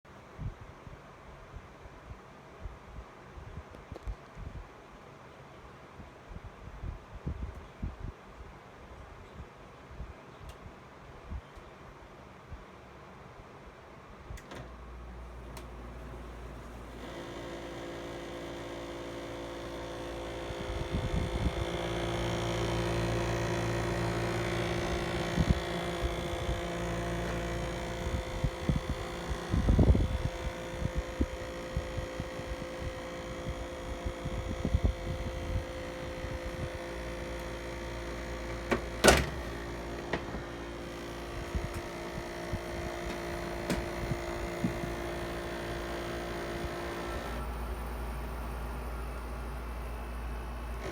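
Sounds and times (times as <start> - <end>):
air conditioner humming: 14.4 - 50.9
knocks and rattles: 34.2 - 46.1.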